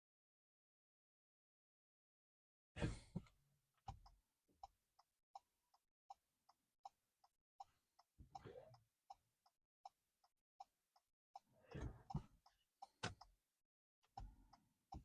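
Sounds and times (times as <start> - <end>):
turn signal ticking: 11.4 - 13.4, 14.1 - 15.0.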